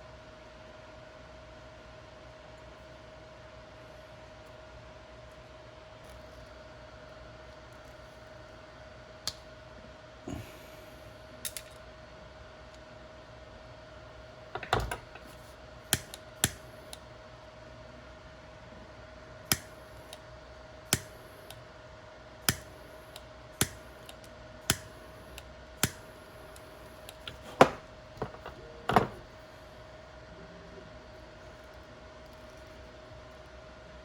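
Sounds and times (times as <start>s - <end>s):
faint steady hum: 0.0s - 34.0s.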